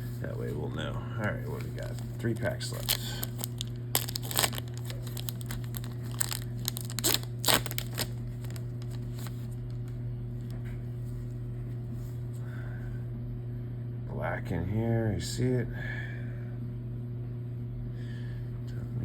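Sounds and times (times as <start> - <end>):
steady low hum: 0.0 - 19.0
wrapper tearing and crinkling: 1.5 - 9.9.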